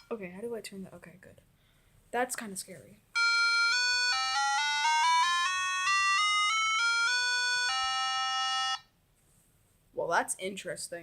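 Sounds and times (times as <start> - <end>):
electronic melody from small speaker: 3.2 - 8.9.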